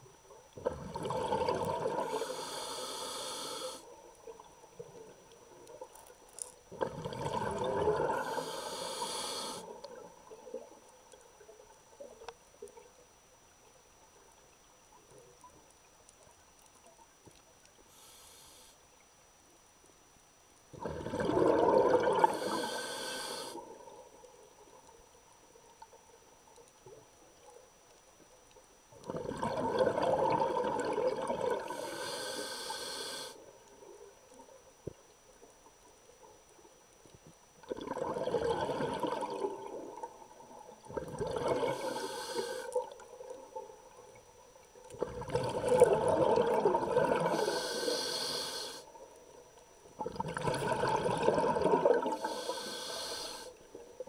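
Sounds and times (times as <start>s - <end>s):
exhaled breath bubbling underwater: 0.6s - 3.8s, 6.7s - 9.9s, 20.8s - 23.9s, 29.1s - 33.4s, 37.7s - 40.0s, 40.9s - 43.0s, 45.0s - 48.9s, 50.0s - 53.6s.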